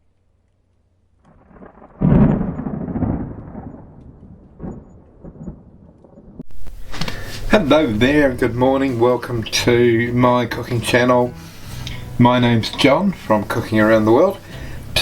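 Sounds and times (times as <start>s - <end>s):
thunder rumbling: 1.2s - 9.0s.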